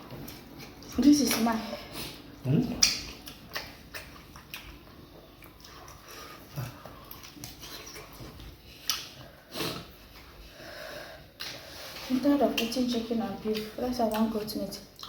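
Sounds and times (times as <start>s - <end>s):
wet chewing and lip smacks: 2.7s - 9.2s.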